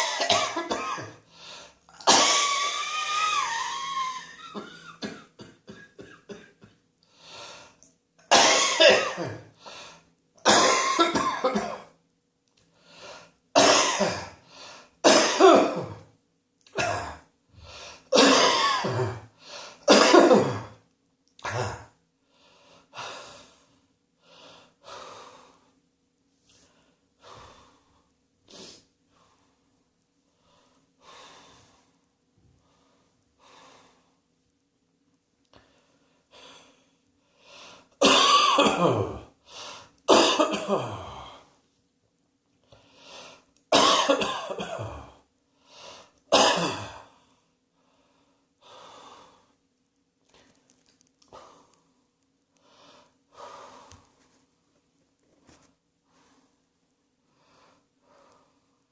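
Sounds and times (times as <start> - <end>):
person coughing: 0.0 - 1.2, 1.9 - 2.8, 4.4 - 6.8, 8.3 - 9.5, 10.4 - 11.9, 13.6 - 14.4, 15.0 - 16.0, 16.7 - 17.3, 18.1 - 19.3, 19.9 - 20.8, 21.4 - 22.0, 38.0 - 39.3, 40.1 - 41.4, 43.7 - 45.2, 46.3 - 47.1.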